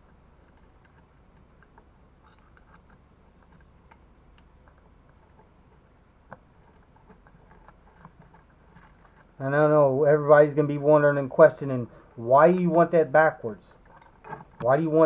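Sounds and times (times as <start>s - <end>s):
small hard parts clicking: 0.0s - 9.4s, 13.8s - 15.0s
low room hum: 0.0s - 15.0s.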